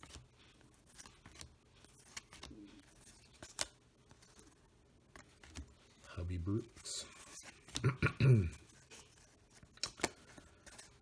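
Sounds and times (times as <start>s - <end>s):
cards rustling: 0.0s - 11.0s
cards clicking together: 3.3s - 3.8s, 9.7s - 11.0s.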